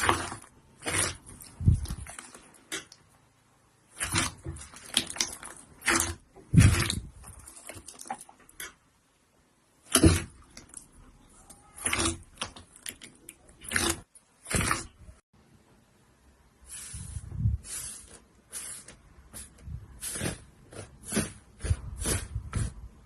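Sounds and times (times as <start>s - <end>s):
slime squelching and popping: 0.0s - 3.1s, 3.9s - 8.8s, 9.8s - 15.2s.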